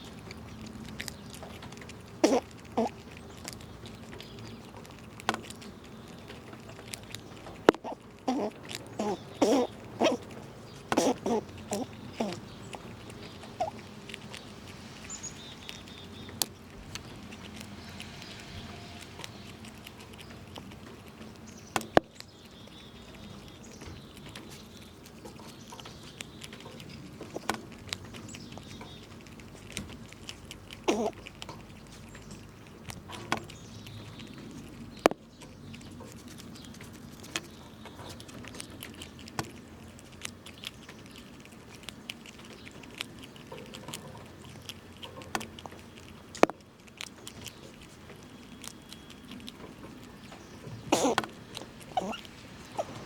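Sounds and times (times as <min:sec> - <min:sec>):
low steady hum: 0:00.0 - 0:30.6
squirrels cracking nuts: 0:00.0 - 0:53.0.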